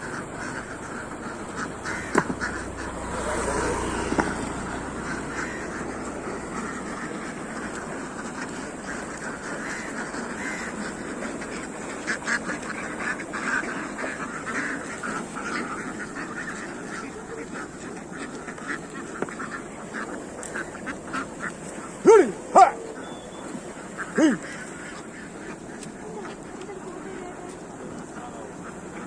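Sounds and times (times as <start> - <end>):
ducks quacking: 0.0 - 29.0
loud rising and falling duck calls: 0.0 - 29.0.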